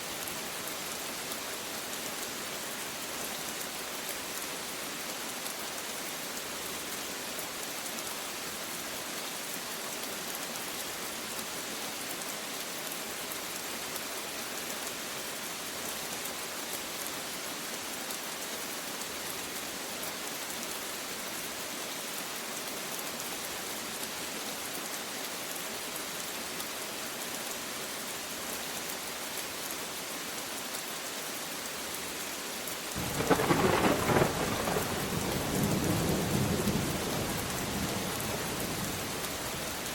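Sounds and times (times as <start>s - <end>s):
steady rain falling: 0.0s - 39.9s
thunder: 33.0s - 38.7s.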